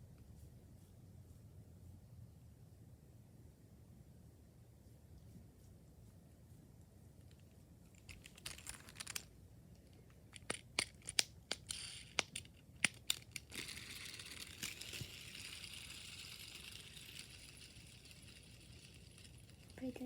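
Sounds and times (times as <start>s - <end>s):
fidget spinner plastic clicks: 7.9s - 20.0s.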